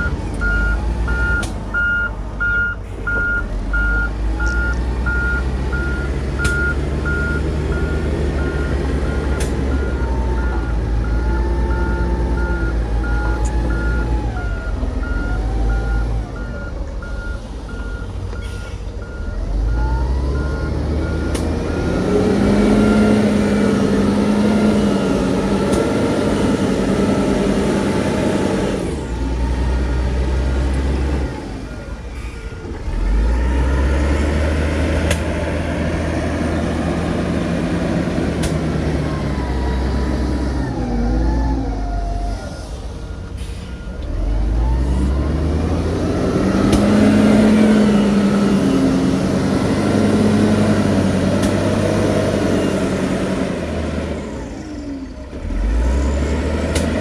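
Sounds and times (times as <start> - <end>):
reversing alarm beeping: 0.0 - 29.1
diesel machinery engine: 0.0 - 57.0.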